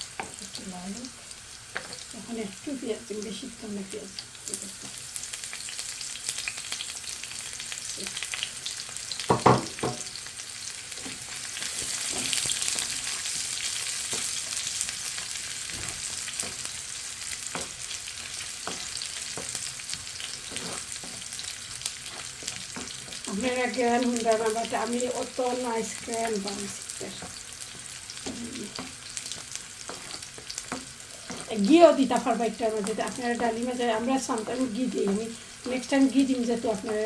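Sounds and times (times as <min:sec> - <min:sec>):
onions sizzling in hot oil: 0:00.0 - 0:37.0
utensil knocking on pan: 0:09.3 - 0:10.1
spoon scraping a pan: 0:11.0 - 0:23.5, 0:24.1 - 0:31.8.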